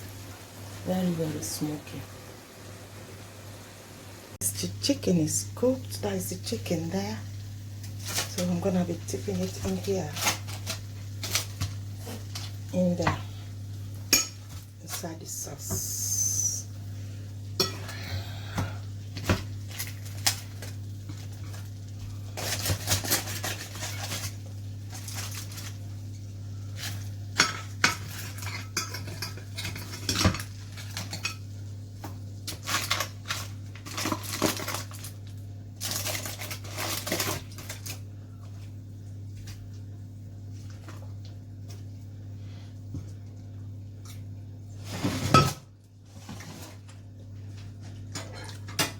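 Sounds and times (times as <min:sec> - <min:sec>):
steady low hum: 0:00.0 - 0:48.9.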